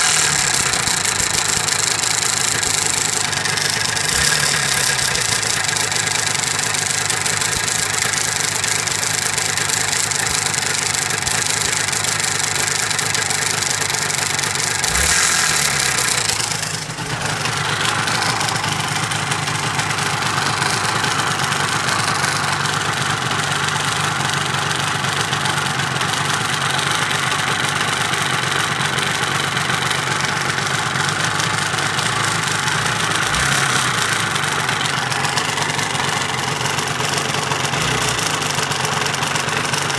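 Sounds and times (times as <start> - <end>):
engine clacking and ticking: 0.0 - 39.9
two-stroke engine idling: 0.0 - 39.9.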